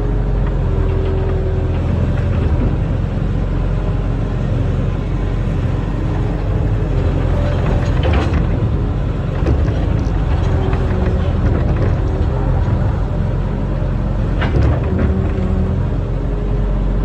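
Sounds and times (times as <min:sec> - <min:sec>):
diesel engine running: 0:00.0 - 0:17.0
metal knocks and clanks: 0:05.7 - 0:16.1.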